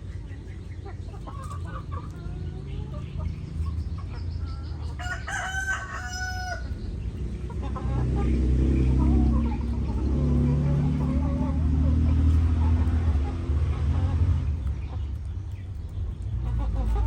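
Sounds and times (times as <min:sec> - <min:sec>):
chickens clucking: 0:00.0 - 0:17.0
low engine hum: 0:00.0 - 0:17.0
rooster crowing: 0:05.0 - 0:06.8.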